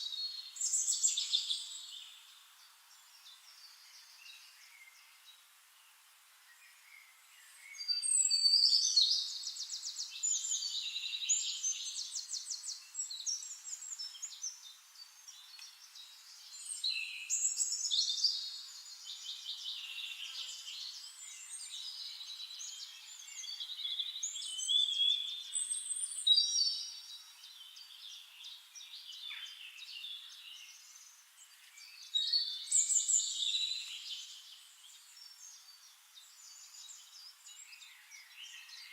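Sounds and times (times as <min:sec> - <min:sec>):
quiet bird twittering: 0:00.0 - 0:38.9.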